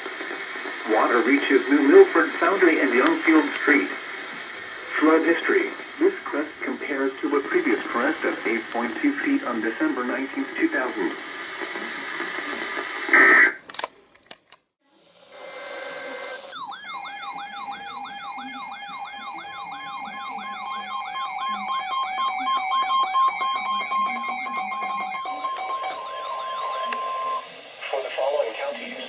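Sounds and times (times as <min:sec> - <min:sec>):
electronic siren-like alert tone: 0:16.5 - 0:27.4.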